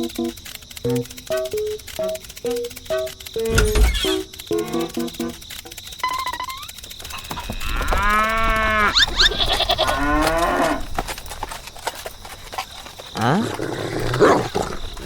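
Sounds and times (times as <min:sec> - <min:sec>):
livestock calling: 0:06.4 - 0:10.9.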